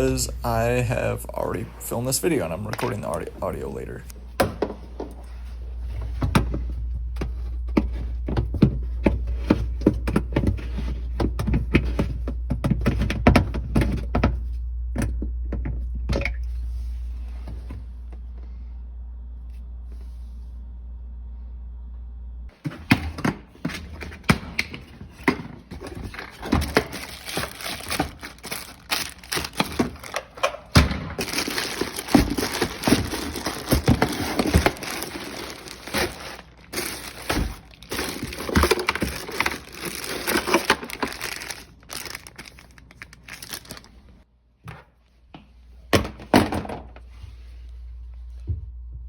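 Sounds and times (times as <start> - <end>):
hands handling plastic parts: 23.6 - 44.2.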